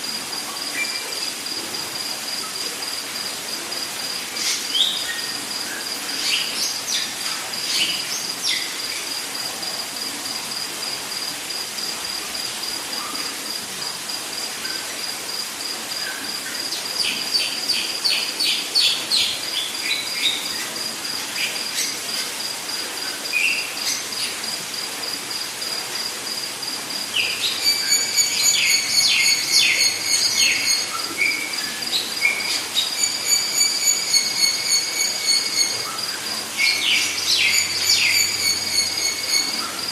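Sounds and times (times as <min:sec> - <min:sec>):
hiss of background insects: 0:00.0 - 0:39.9
insect pulsing trill: 0:26.0 - 0:39.9.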